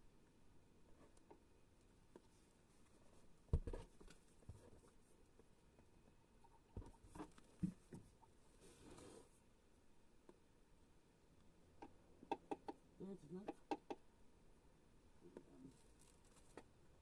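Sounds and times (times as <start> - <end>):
light knocks and handling bumps: 2.1 - 8.3.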